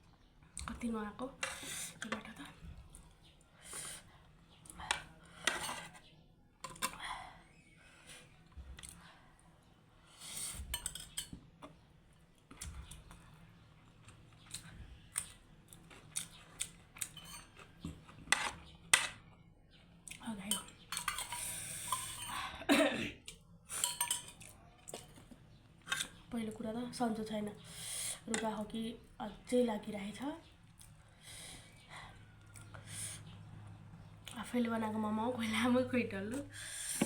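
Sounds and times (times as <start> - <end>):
cutlery clinking on a plate: 17.0 - 17.7, 23.8 - 24.5.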